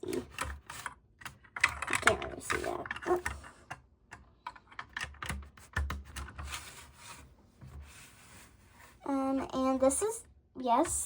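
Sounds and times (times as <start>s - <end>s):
plastic bricks clicking: 0.0s - 6.3s
soft scraping: 6.5s - 9.1s.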